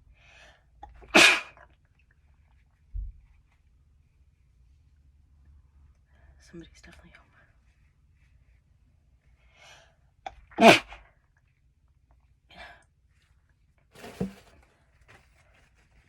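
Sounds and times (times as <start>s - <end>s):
loud sneeze: 1.1s - 1.6s, 10.5s - 11.0s.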